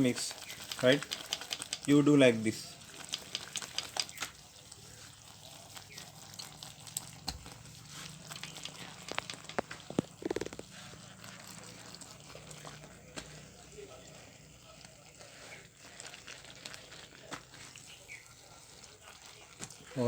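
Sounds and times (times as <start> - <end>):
pot being shaken clicking: 0.0 - 4.5, 5.3 - 10.7.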